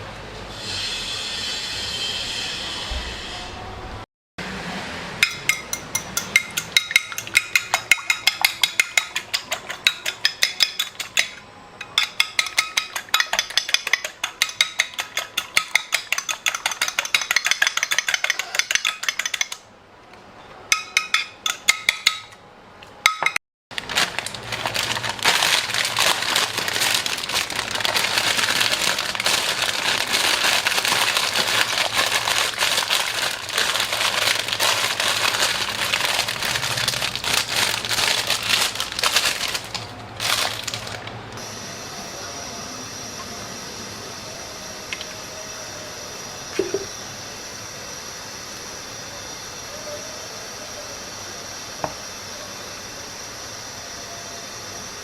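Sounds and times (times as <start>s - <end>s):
hard objects clinking: 5.2s - 19.6s, 23.1s - 41.1s.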